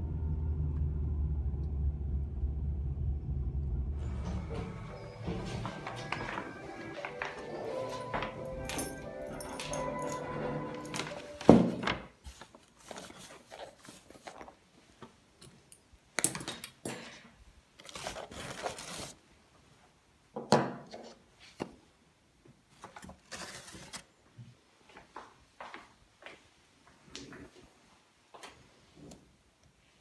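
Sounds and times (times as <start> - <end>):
packaging rustling and crinkling: 10.7 - 14.7, 17.8 - 19.2, 22.8 - 24.1.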